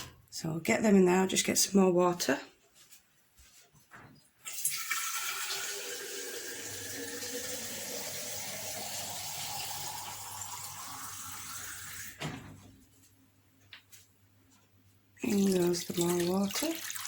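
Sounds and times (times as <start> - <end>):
tap water filling a container: 4.5 - 12.2, 15.2 - 17.0.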